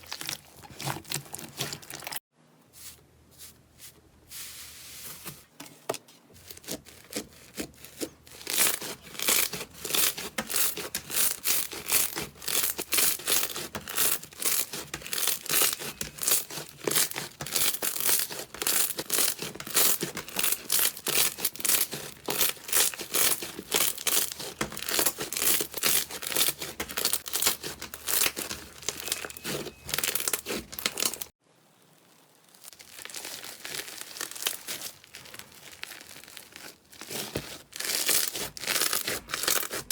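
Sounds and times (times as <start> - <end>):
slime squeezed by hand crackling: 24.8 - 39.9.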